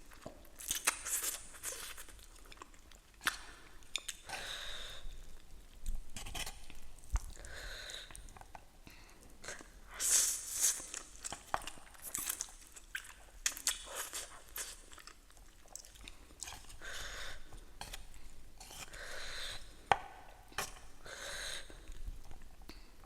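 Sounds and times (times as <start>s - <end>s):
crunching and chewing: 0.0s - 4.3s, 10.8s - 16.8s
hissy mouth noise: 9.9s - 11.0s.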